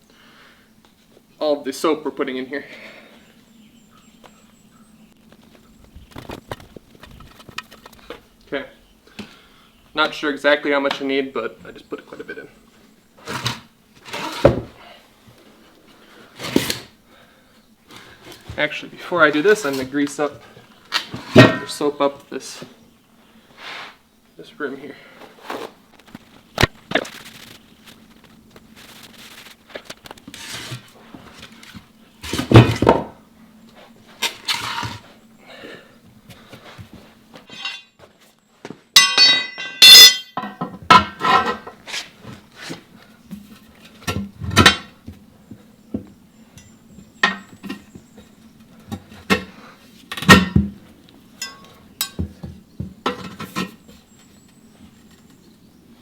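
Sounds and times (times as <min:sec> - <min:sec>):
metal tools clanking on wheel rim: 0:20.9 - 0:21.8, 0:37.4 - 0:38.1, 0:39.0 - 0:41.8, 0:46.6 - 0:48.0, 0:50.1 - 0:50.8, 0:51.4 - 0:54.0
metallic ringing: 0:37.5 - 0:38.0, 0:39.0 - 0:40.6, 0:51.4 - 0:52.2.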